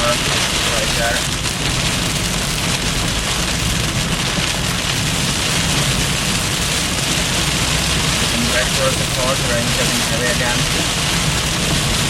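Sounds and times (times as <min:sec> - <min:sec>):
heavy rain on a car: 0:00.0 - 0:12.0
road and engine rumble: 0:00.0 - 0:12.0.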